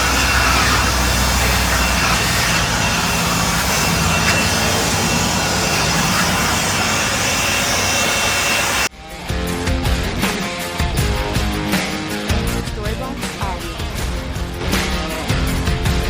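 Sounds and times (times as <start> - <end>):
blower rushing air: 0.0 - 8.9.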